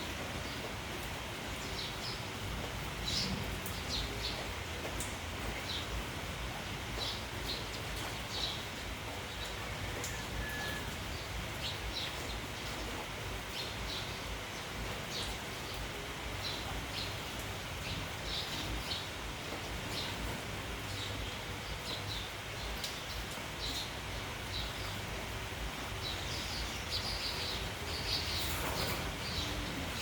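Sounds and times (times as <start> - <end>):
rain hiss: 0.0 - 30.0
wind in trees: 0.0 - 30.0
sparrows chirping: 1.6 - 4.5, 6.6 - 30.0.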